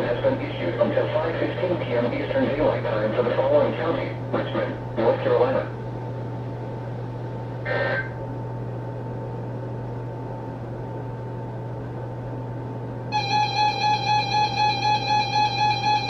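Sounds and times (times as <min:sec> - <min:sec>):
radio hum and hiss: 0:00.0 - 0:08.9
pulsing electronic beep tone: 0:13.1 - 0:16.0.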